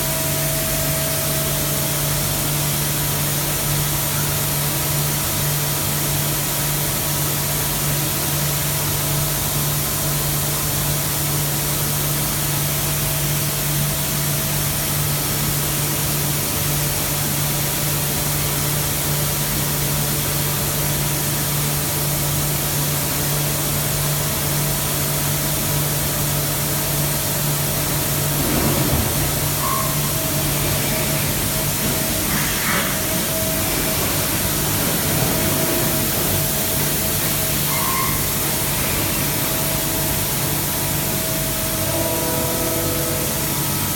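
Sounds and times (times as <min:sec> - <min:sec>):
machining center humming: 0:25.9 - 0:43.9.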